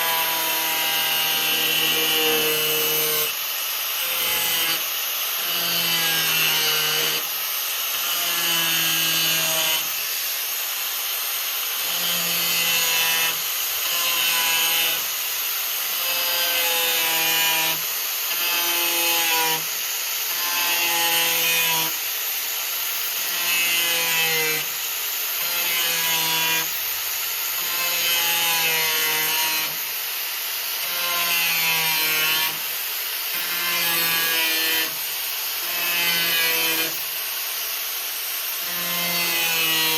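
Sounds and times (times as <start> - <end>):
hand saw rasping on steel tube: 30.8 - 37.2.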